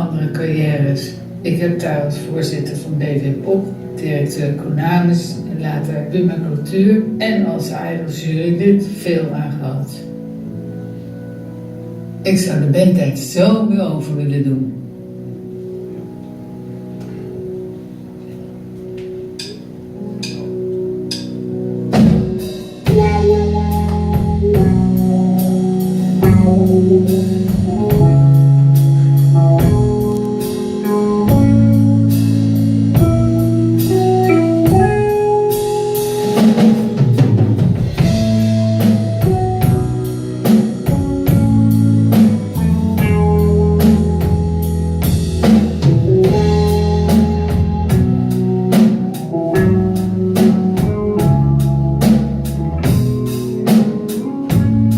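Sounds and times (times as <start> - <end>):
guitar chords: 14.4 - 54.9
drum kit beat: 18.9 - 54.9.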